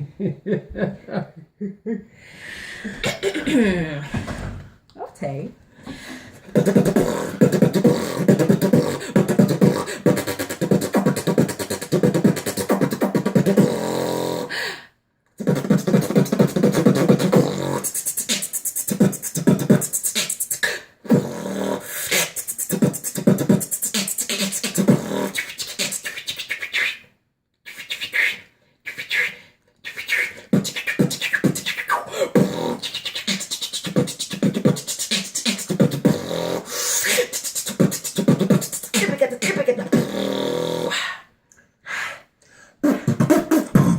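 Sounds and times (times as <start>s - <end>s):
beatboxing vocal percussion: 6.4s - 14.6s, 15.4s - 41.3s, 42.8s - 43.9s.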